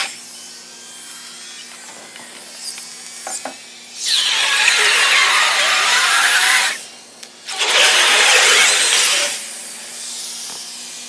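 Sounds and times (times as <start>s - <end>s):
steam hissing and squealing: 4.0s - 6.8s.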